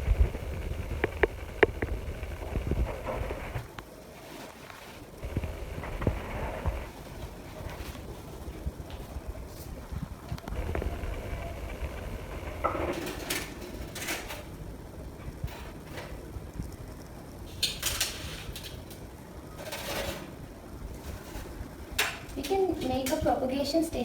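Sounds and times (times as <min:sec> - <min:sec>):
low rumble: 0:00.0 - 0:03.8, 0:05.2 - 0:13.0.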